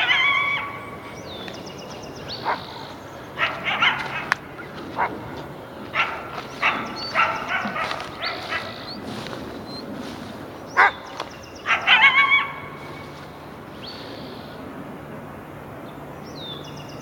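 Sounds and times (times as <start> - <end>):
coyote bark-howl: 0.0 - 1.1, 2.3 - 9.2, 10.8 - 13.1
coyote barking and yelping: 0.0 - 1.4, 2.2 - 13.2.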